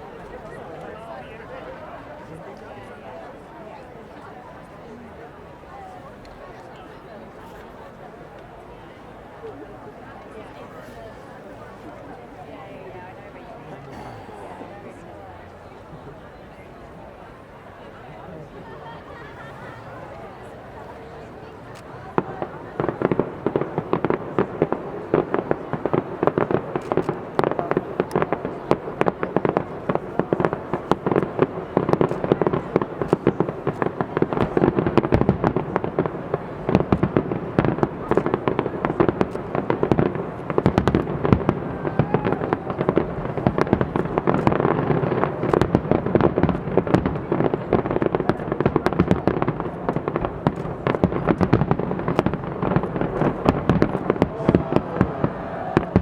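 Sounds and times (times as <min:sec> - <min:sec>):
fireworks rapid bangs: 0:22.2 - 0:56.0.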